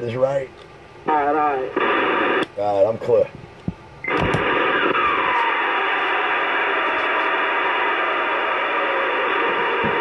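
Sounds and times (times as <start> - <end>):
radio static hiss: 1.0 - 3.4, 4.0 - 10.0.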